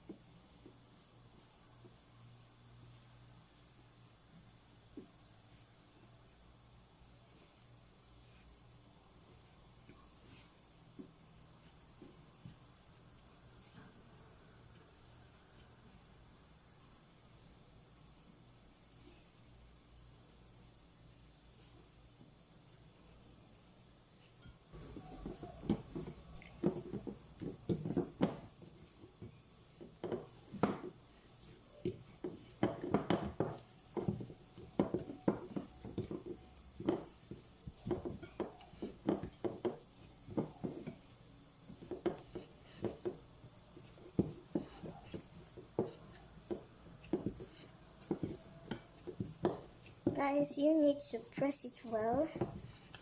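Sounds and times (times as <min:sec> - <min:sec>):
dough knocking against bowl: 0:24.8 - 0:31.0, 0:31.8 - 0:41.1, 0:41.7 - 0:50.2.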